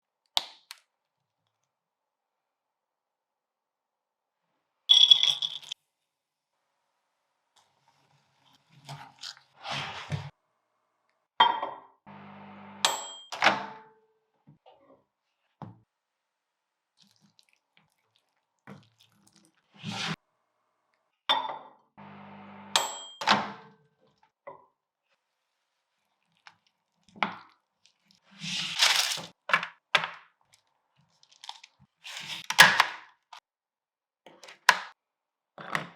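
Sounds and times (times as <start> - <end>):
microwave oven humming: 12.1 - 12.9, 22.0 - 22.8.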